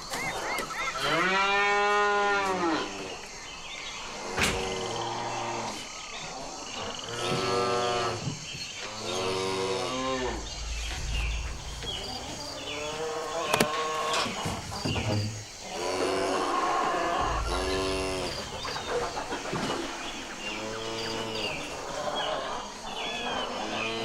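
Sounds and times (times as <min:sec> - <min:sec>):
cattle mooing: 0:17.2 - 0:19.3.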